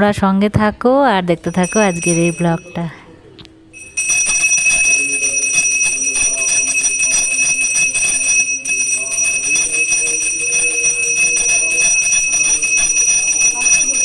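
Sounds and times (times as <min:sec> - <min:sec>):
temple bells ringing: 0:01.5 - 0:14.0.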